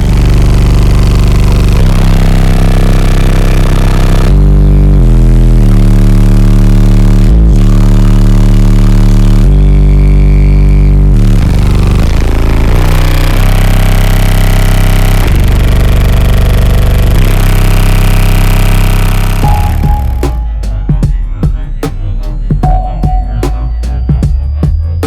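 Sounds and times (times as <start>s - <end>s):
loud deep bass from subwoofers: 0.0s - 25.0s.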